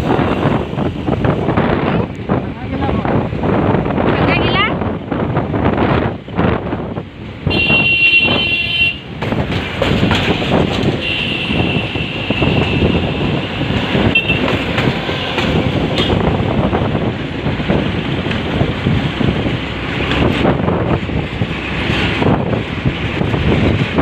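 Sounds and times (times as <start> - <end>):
rumble of traffic: 0.0 - 24.0
vehicle horn: 7.5 - 9.0, 11.0 - 14.6.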